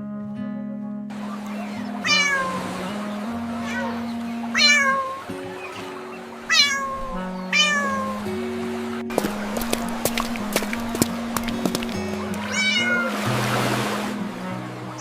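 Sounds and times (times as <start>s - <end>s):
background music: 0.0s - 15.0s
cat meowing: 1.6s - 2.9s, 3.6s - 8.3s, 12.4s - 13.2s.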